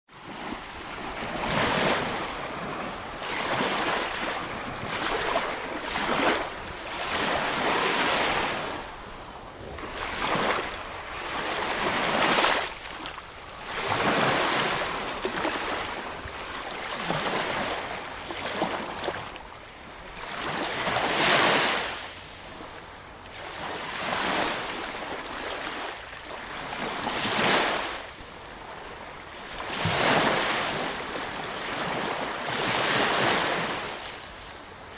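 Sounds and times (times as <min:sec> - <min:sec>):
sea waves washing in: 0:00.2 - 0:18.7.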